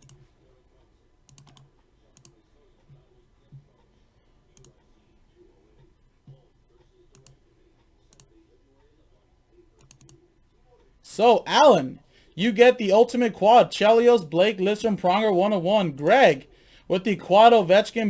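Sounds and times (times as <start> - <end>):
keyboard and mouse clicks: 0.0 - 0.2, 1.3 - 2.3, 4.6 - 4.8, 7.1 - 7.4, 9.8 - 10.2.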